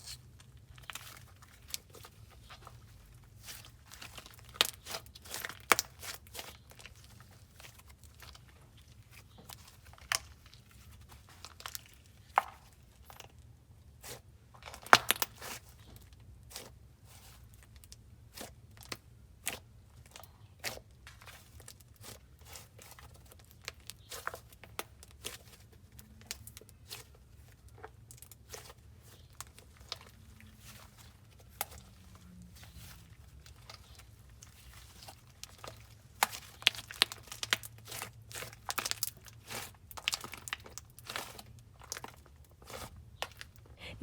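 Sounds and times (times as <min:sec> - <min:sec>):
slime sticky clicks and crackles: 0:03.4 - 0:13.3, 0:14.6 - 0:15.9, 0:33.4 - 0:43.6.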